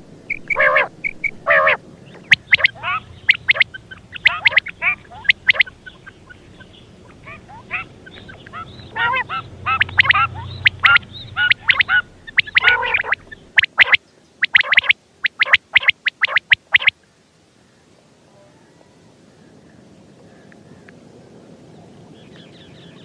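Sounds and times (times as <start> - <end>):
quail calling: 0.0 - 16.9.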